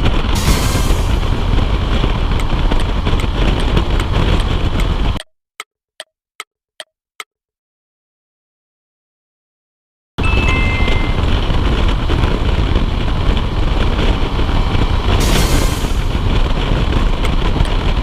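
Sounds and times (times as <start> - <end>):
motorcycle engine running: 0.0 - 5.2, 10.6 - 18.0
wind rushing over microphone: 0.0 - 5.2, 10.2 - 18.0.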